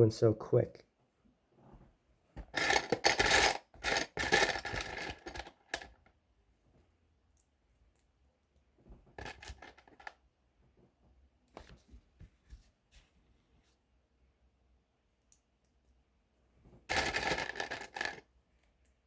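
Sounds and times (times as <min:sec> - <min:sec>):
plastic bricks clattering: 0:02.5 - 0:05.9, 0:09.2 - 0:10.1, 0:16.9 - 0:18.2.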